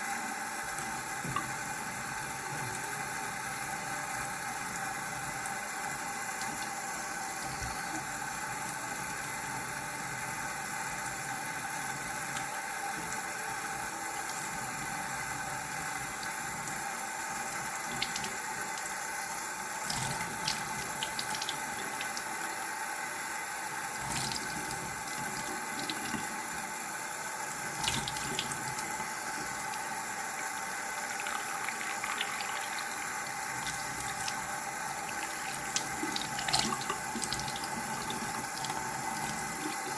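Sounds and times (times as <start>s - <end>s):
tap water running into sink: 6.4s - 9.1s, 17.4s - 23.2s, 23.8s - 26.8s, 27.5s - 39.9s.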